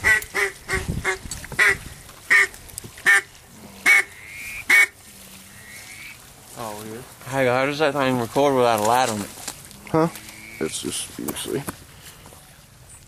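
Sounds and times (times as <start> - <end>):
duck quacking: 0.0 - 6.2, 10.0 - 10.7.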